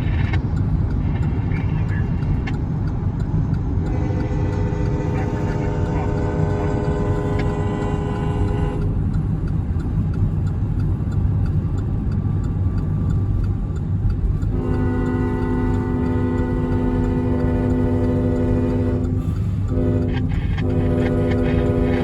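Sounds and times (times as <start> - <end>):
train rumbling by: 0.0 - 22.0
faint ticks: 0.2 - 22.0
locomotive air horn: 3.8 - 9.0, 14.5 - 22.0.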